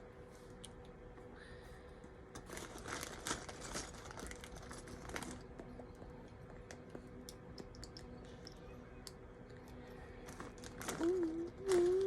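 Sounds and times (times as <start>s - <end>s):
plastic packaging crinkling: 2.4s - 5.6s, 10.2s - 12.0s.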